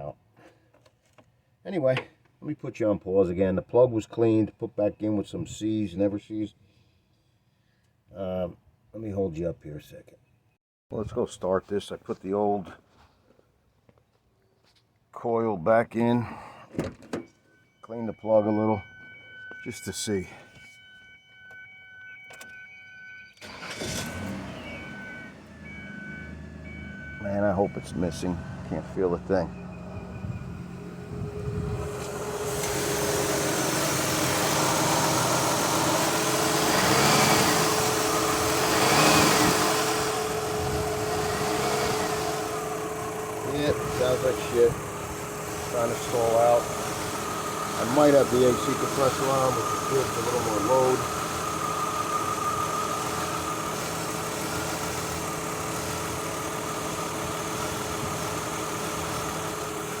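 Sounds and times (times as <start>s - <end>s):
car engine idling rough: 26.6s - 60.0s
steady whine: 30.0s - 59.8s.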